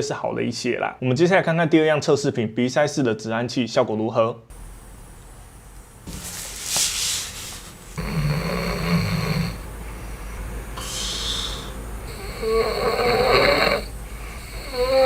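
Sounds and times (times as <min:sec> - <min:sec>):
man snoring: 0:08.0 - 0:09.7, 0:10.8 - 0:15.0.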